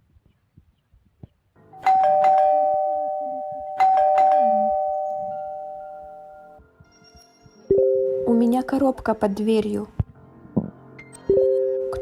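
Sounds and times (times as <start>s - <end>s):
doorbell ding-dong chime: 1.8s - 6.6s.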